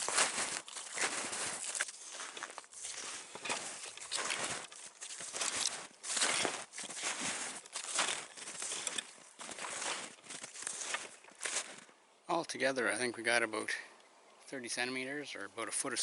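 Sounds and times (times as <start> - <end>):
footsteps crunching in snow: 0.0 - 12.0.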